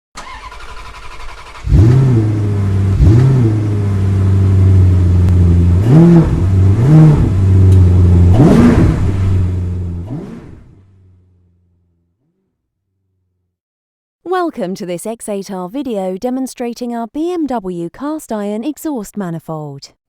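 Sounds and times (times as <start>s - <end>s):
car engine idling and revving: 0.2s - 12.5s.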